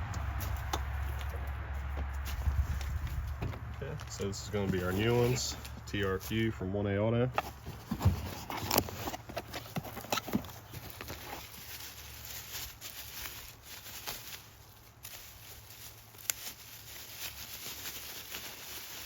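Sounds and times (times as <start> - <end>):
small parts rustling: 7.3 - 19.0.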